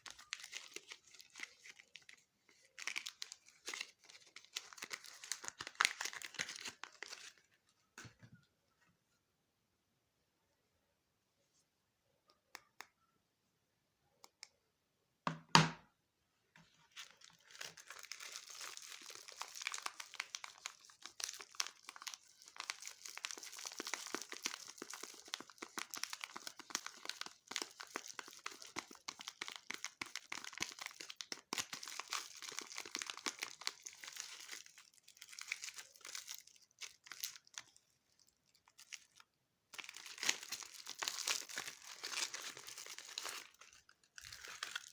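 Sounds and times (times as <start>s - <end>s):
packaging tearing and crinkling: 0.0s - 7.4s, 17.0s - 44.9s.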